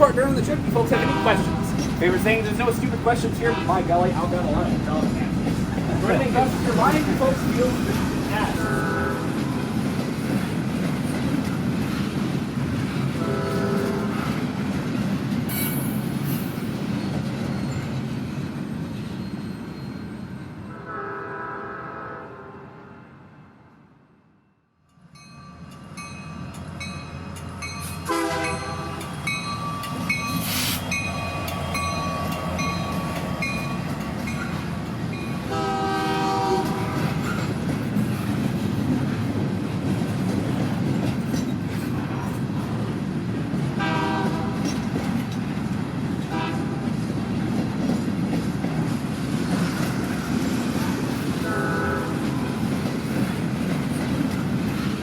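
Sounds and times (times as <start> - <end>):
locomotive bell ringing: 0.0 - 5.3, 25.0 - 35.4
train rumble: 0.0 - 20.8, 25.6 - 55.0
steam whistle blasts: 20.8 - 22.7, 28.1 - 29.0.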